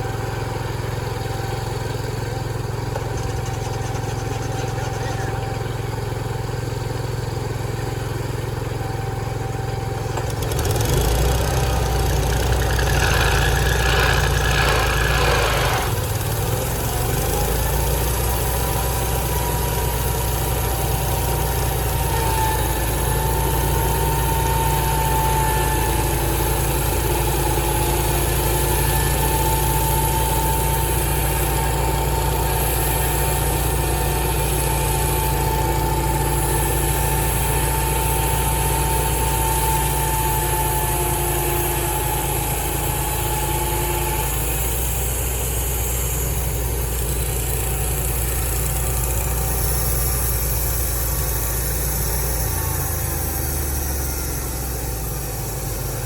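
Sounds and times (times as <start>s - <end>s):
sawmill engine droning: 0.0s - 56.0s
thin steady whine: 13.1s - 56.0s.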